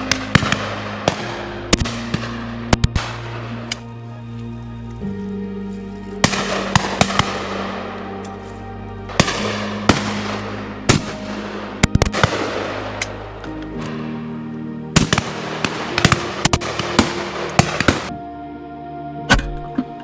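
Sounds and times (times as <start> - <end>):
shotgun shots: 0.0 - 3.9, 6.2 - 8.5, 9.1 - 14.3, 15.0 - 18.1
background music: 0.0 - 20.0.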